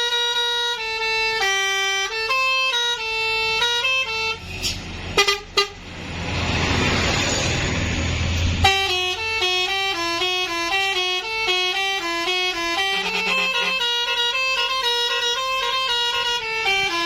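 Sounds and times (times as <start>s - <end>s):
multi-tone horn melody: 0.0s - 4.4s, 5.2s - 5.8s, 8.6s - 17.0s.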